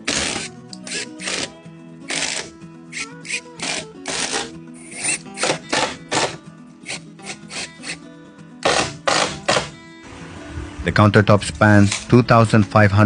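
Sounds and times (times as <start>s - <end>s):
hand tool scraping wood: 0.0s - 1.5s, 2.1s - 8.0s, 8.6s - 9.8s
background music: 0.0s - 13.0s.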